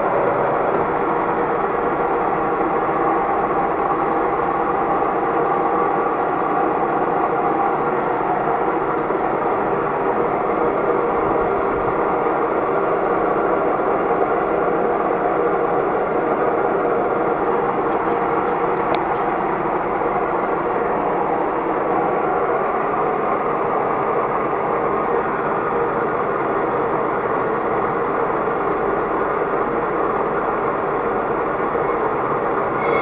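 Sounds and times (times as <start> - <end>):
metal lathe cutting: 32.8 - 33.0.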